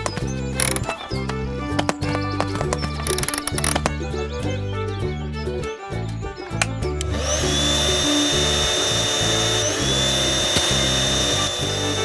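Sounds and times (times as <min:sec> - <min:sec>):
power tool whining: 0:00.5 - 0:01.2, 0:07.0 - 0:12.0.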